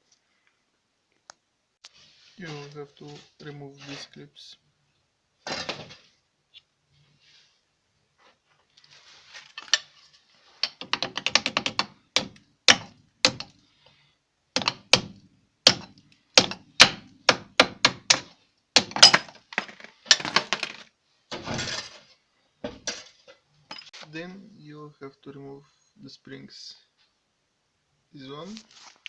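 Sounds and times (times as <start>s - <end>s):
metal scrape: 2.0s - 4.3s.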